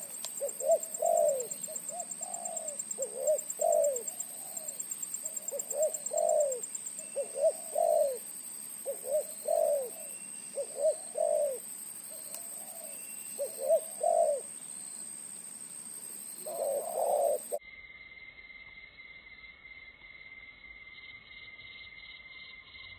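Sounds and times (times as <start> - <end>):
dove cooing: 0.0 - 14.5, 16.0 - 17.6.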